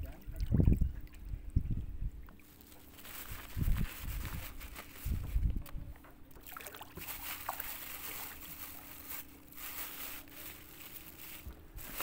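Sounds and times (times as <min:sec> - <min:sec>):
faint steady hum: 0:00.0 - 0:12.0
water lapping and sloshing: 0:06.3 - 0:10.0.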